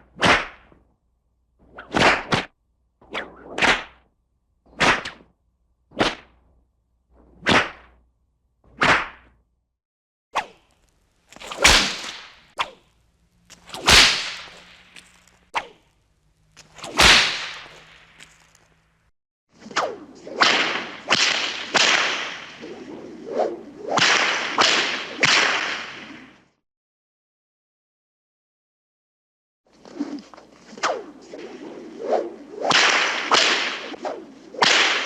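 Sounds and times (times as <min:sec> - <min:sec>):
whip cracks: 0:00.1 - 0:00.7, 0:01.8 - 0:02.5, 0:03.1 - 0:04.0, 0:04.8 - 0:05.3, 0:06.0 - 0:06.4, 0:07.4 - 0:08.0, 0:08.8 - 0:09.3, 0:11.3 - 0:12.9, 0:13.5 - 0:15.9, 0:16.5 - 0:18.7, 0:19.6 - 0:26.4, 0:30.7 - 0:35.0.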